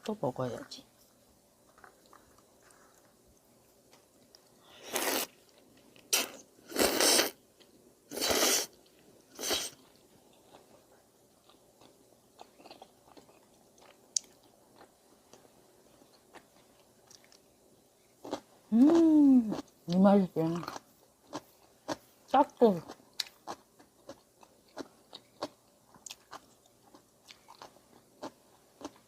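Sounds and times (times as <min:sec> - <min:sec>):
person chewing: 0:01.7 - 0:17.5, 0:18.2 - 0:19.8, 0:20.6 - 0:22.1, 0:22.9 - 0:29.0
person slurping noodles: 0:04.8 - 0:05.3, 0:06.1 - 0:07.4, 0:08.1 - 0:08.7, 0:09.4 - 0:09.7.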